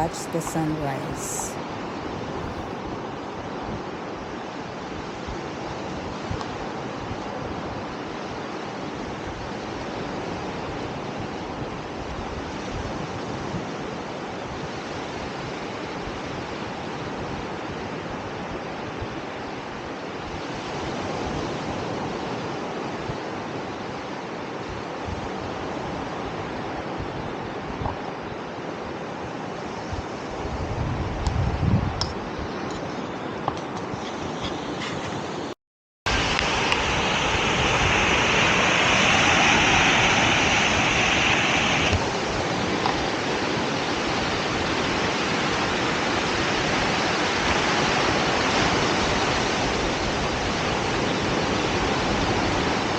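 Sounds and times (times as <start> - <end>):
waves washing onto sand: 0.0 - 31.3, 36.1 - 52.9
wind buffeting microphone: 29.7 - 35.5.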